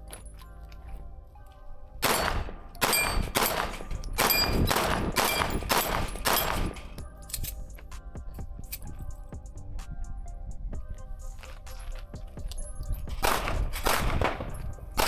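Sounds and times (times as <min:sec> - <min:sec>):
pistol shots: 0:02.0 - 0:07.0, 0:13.2 - 0:15.0.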